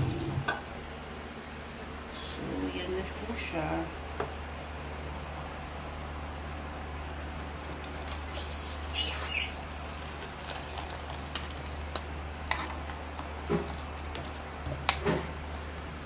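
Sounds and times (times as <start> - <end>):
short high squeaks: 8.2 - 9.6.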